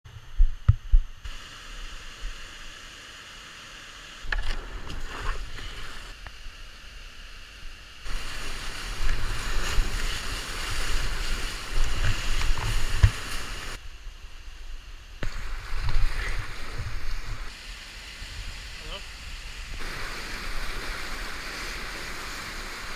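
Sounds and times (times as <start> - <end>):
wind rumbling on microphone: 8.0 - 13.9, 15.0 - 22.9
river rapids rushing: 19.8 - 22.9.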